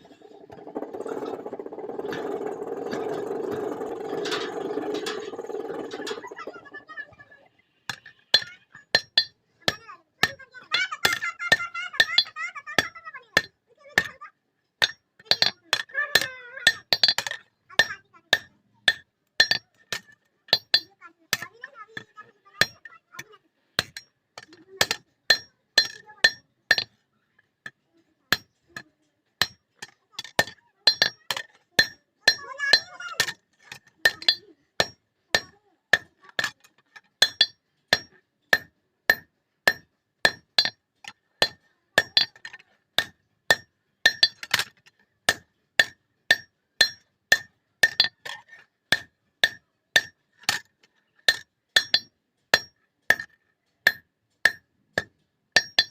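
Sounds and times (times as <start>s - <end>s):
hammer striking steel on anvil: 37.2s - 40.8s, 43.0s - 44.6s, 45.3s - 50.6s, 51.3s - 55.9s.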